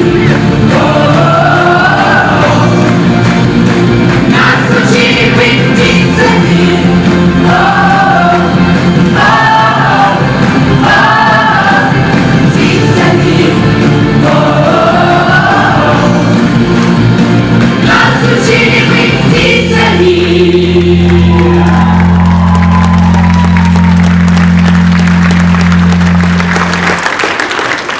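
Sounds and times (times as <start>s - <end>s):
voices singing together: 0.0s - 16.8s, 17.6s - 21.8s.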